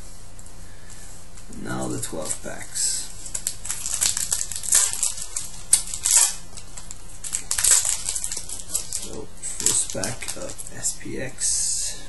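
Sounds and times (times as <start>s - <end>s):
wrapper rustling and crinkling: 2.0s - 10.9s.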